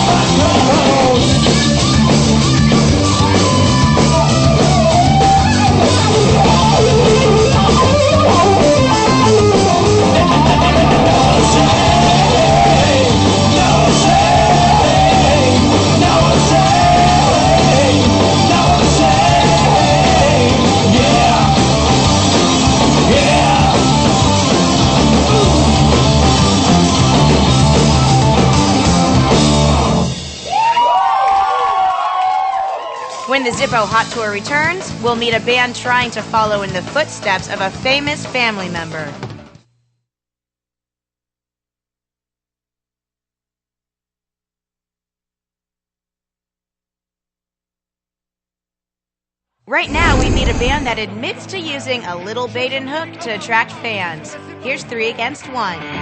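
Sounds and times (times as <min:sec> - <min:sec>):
loud rock band playing: 0:00.0 - 0:30.6.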